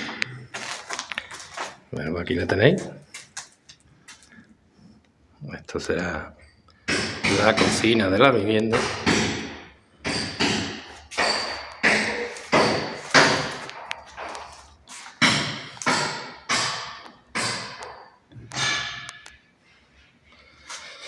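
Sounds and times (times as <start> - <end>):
sharp thuds in echoing room: 6.9 - 19.1.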